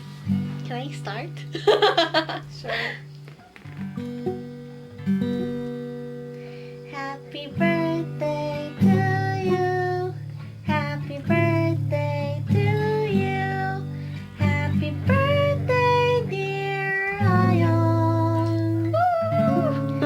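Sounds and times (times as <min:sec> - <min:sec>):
acoustic guitar strummed: 0:00.0 - 0:20.0
high voice singing: 0:16.5 - 0:20.0.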